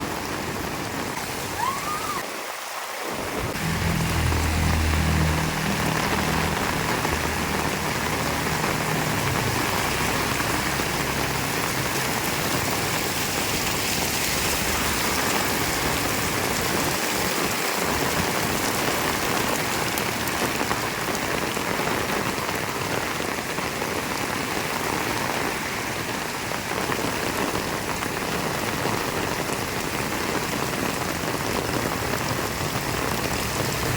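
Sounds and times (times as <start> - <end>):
heavy rain falling: 0.0 - 33.9
low rumble: 3.4 - 12.8.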